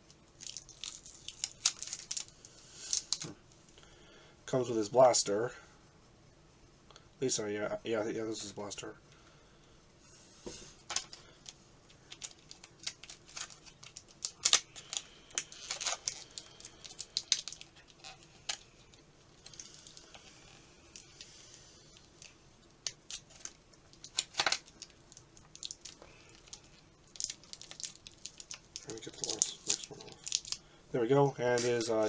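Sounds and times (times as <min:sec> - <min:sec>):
soft crinkling: 0:00.0 - 0:03.9, 0:08.3 - 0:32.0
plastic packaging clicks and crackles: 0:00.1 - 0:03.4, 0:10.8 - 0:30.6.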